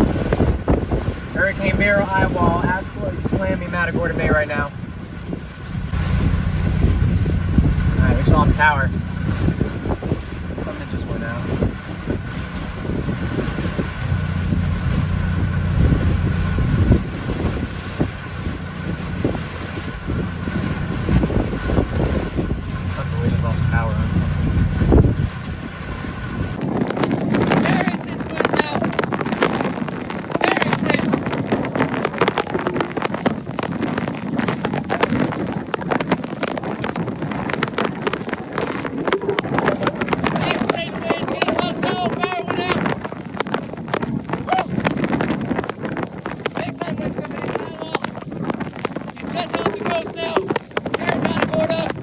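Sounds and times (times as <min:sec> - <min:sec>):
wind buffeting microphone: 0:00.0 - 0:27.5.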